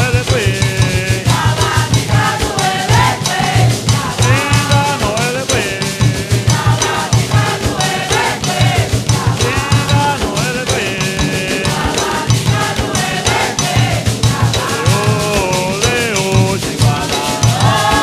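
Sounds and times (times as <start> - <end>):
fast steady drumming: 0.0 - 18.0
voices singing a chant: 0.0 - 18.0.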